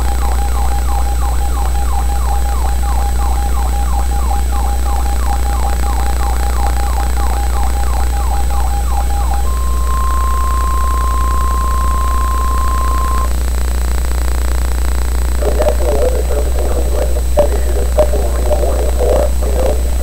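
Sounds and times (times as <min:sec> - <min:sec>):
warning alarm beep: 0:00.0 - 0:13.3
muffled broadcast voice: 0:00.0 - 0:13.4, 0:15.3 - 0:20.0
low hum and radio hiss: 0:00.0 - 0:20.0.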